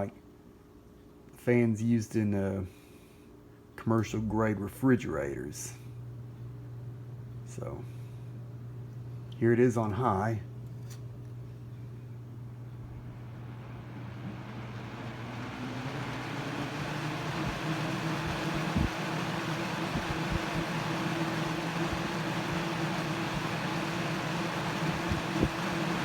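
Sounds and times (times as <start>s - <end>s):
low buzzing hum: 1.5s - 26.0s
box fan air rush: 11.9s - 26.0s.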